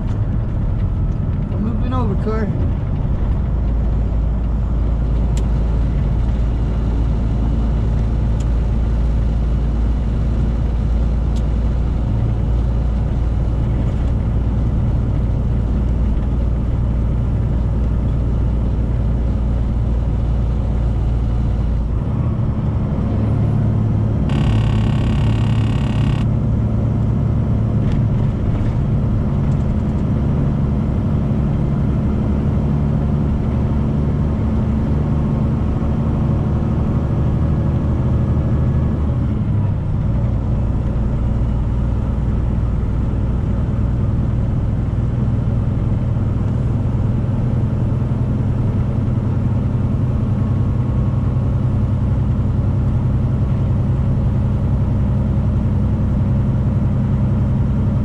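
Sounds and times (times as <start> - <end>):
truck engine and road drone: 0.0 - 58.0
short buzzy sound: 24.2 - 26.3.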